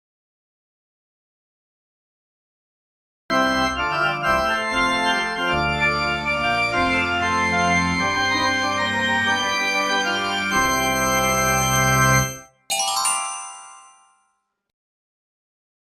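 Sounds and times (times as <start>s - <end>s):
electric organ chords: 3.3s - 13.9s.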